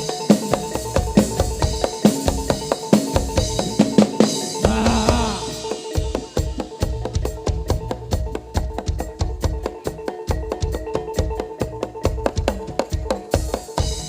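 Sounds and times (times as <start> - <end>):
fast drum strokes: 1.2 - 9.2.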